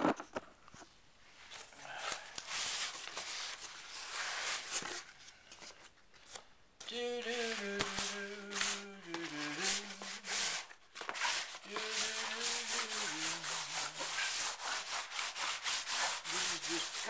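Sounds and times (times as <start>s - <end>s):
man humming: 6.8s - 10.6s, 11.6s - 14.2s, 16.2s - 17.0s
paint brush scrubbing canvas: 7.4s - 17.0s.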